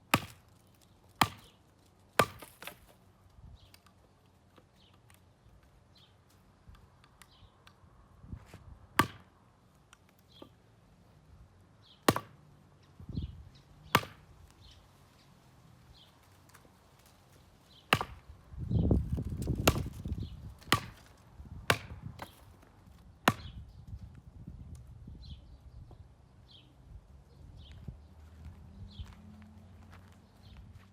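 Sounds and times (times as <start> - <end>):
machete chopping wood: 0.1 - 0.6, 1.2 - 1.6, 2.2 - 3.0, 9.0 - 9.3, 12.0 - 12.4, 13.9 - 14.3, 17.8 - 18.3, 19.4 - 22.6, 23.2 - 23.6.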